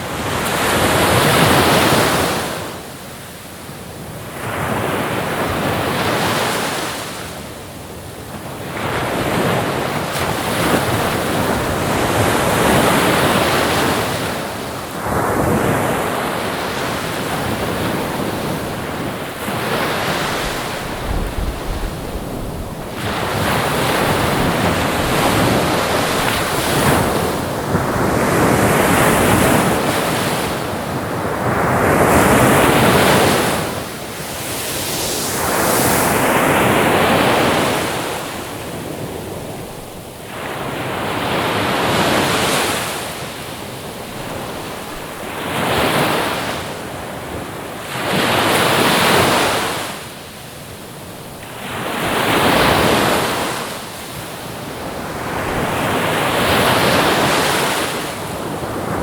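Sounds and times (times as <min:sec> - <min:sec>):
ocean waves breaking: 0:08.7 - 0:47.3.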